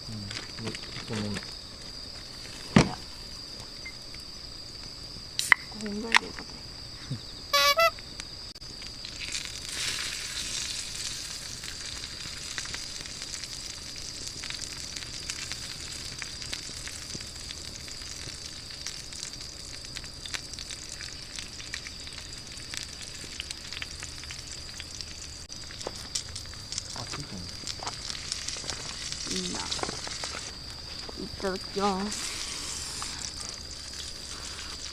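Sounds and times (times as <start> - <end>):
wood fire crackling: 0.0 - 7.3, 8.3 - 34.9
sausages sizzling over fire: 0.0 - 34.9
short high squeak: 7.6 - 8.0.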